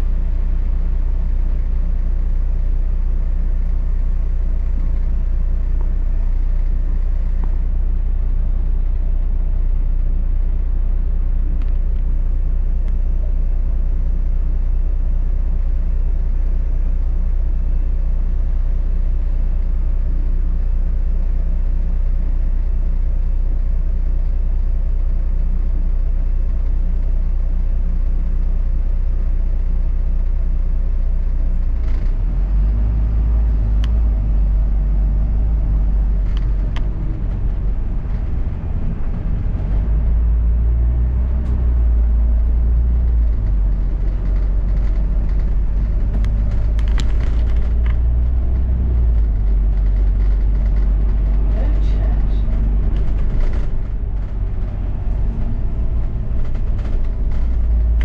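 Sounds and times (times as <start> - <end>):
bus rumbling in motion: 0.0 - 58.0
faint hum: 33.2 - 58.0.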